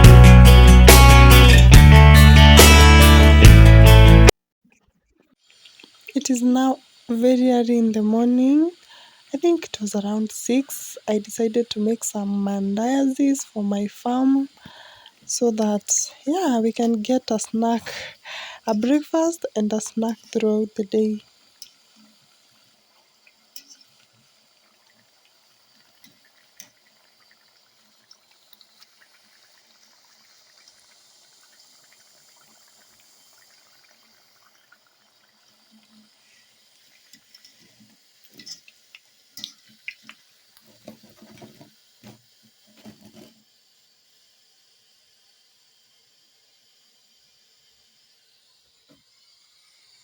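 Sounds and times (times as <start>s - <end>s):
tap water running into sink: 5.5s - 6.4s, 18.3s - 43.4s.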